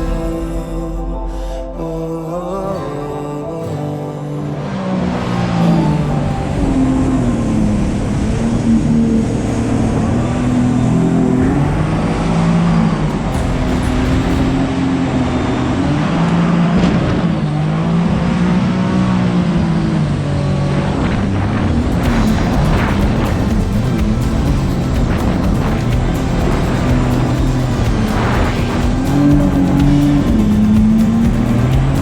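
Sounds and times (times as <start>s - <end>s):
boat motor running: 20.8s - 32.0s.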